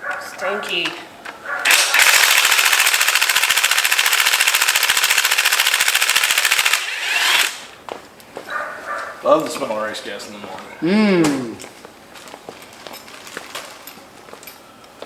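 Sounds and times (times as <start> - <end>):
impact wrench rattling: 1.7 - 7.8.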